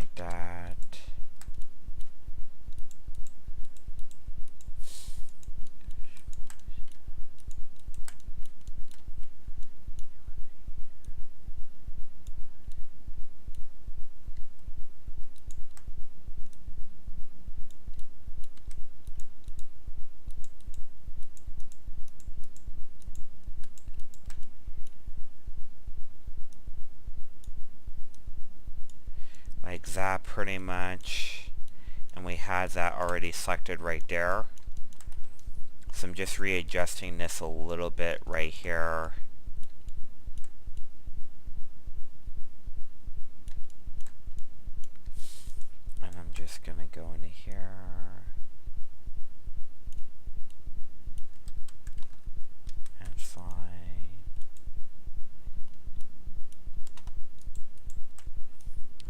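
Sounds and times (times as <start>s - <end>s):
pulsing low electrical hum: 0.0s - 59.0s.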